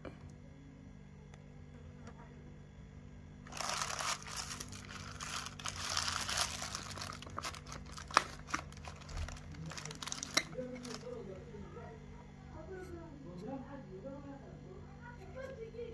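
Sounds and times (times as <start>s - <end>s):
packaging crinkling and rustling: 3.5s - 11.3s.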